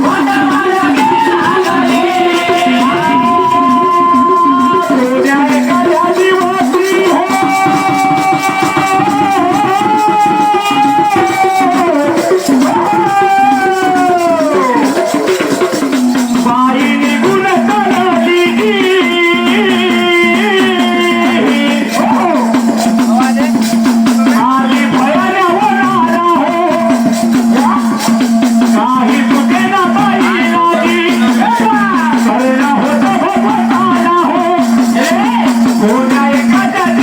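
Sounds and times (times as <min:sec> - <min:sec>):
devotional song melody: 0:00.0 - 0:37.0
rattling percussion: 0:00.0 - 0:37.0.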